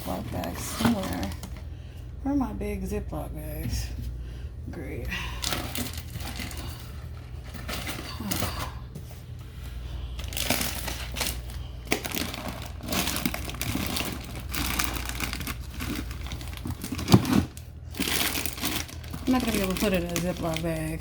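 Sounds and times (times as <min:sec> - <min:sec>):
plastic bags crinkling: 0:00.0 - 0:01.7, 0:05.3 - 0:09.0, 0:10.1 - 0:21.0.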